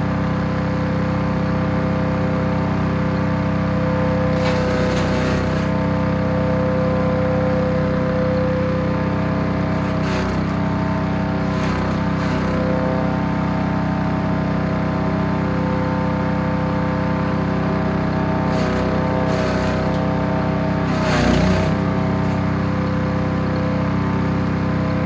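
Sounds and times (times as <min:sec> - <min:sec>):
wood chipper engine running: 0:00.0 - 0:25.0
crackling bursts: 0:04.3 - 0:05.8, 0:09.7 - 0:10.6, 0:11.4 - 0:12.7, 0:18.5 - 0:20.0, 0:20.8 - 0:22.4.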